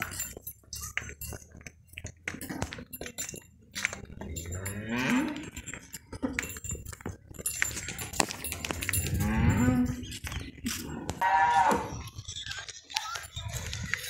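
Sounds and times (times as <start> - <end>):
cattle mooing: 9.1 - 10.0, 10.8 - 12.0.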